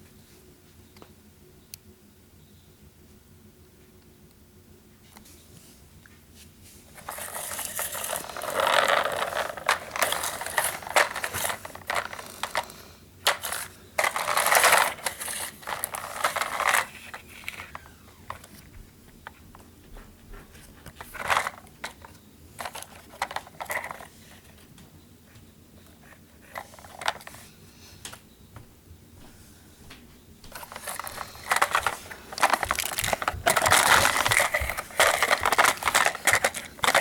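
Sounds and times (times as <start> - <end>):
toy cars scraping and rattling: 7.0 - 18.7, 20.9 - 24.6, 26.0 - 27.5, 30.5 - 37.0.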